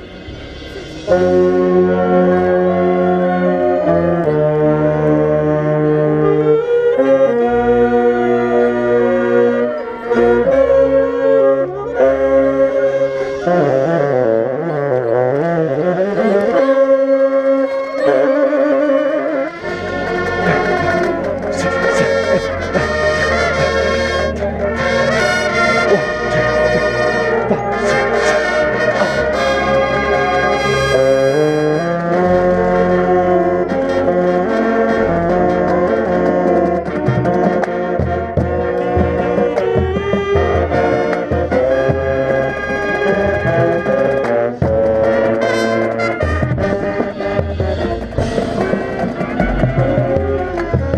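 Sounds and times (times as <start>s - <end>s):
marching band playing: 0.0s - 50.9s
tenor saxophone: 0.0s - 50.9s
drum strikes: 46.0s - 50.9s.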